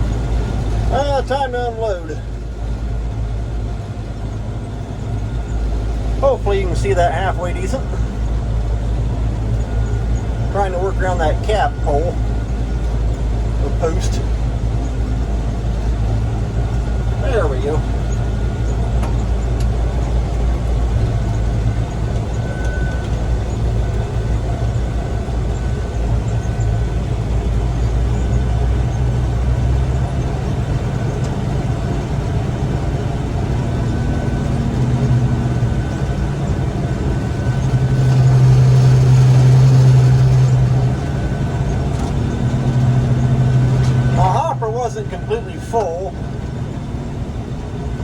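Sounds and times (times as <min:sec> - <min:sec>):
combine harvester engine drone: 0:00.0 - 0:48.0.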